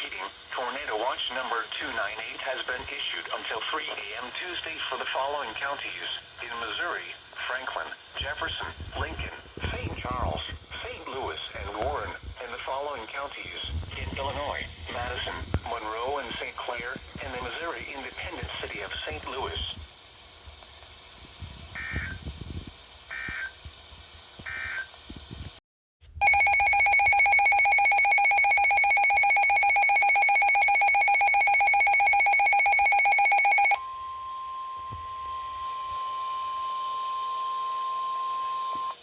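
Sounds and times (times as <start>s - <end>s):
data bursts: 26.2s - 33.8s
warbling two-tone alert signal: 26.2s - 33.8s.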